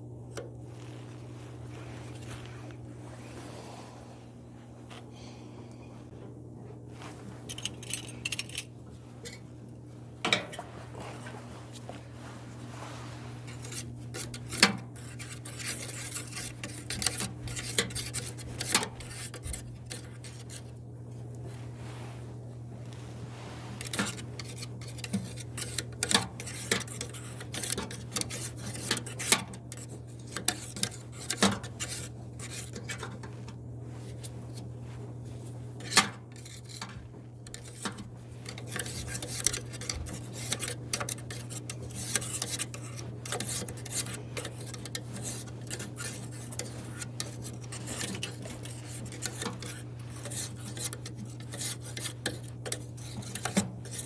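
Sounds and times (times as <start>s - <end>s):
steady low hum: 0.0s - 54.0s
tool scraping and clicking on blower wheel: 0.3s - 0.6s, 7.4s - 9.5s, 10.2s - 11.9s, 13.4s - 21.4s, 23.6s - 34.7s, 35.7s - 54.0s.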